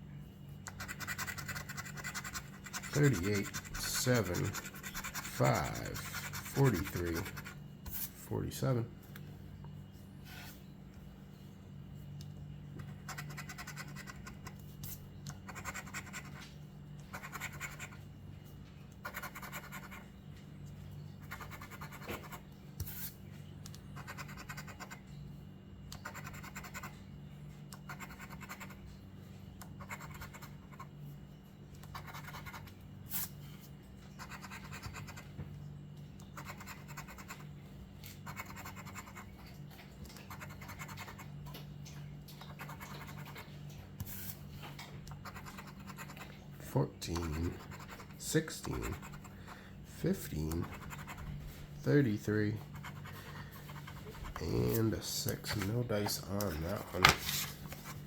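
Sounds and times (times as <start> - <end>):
steady low hum: 0.0 - 58.0
lottery ticket being scratched: 0.7 - 8.7, 45.2 - 49.4, 50.0 - 58.0.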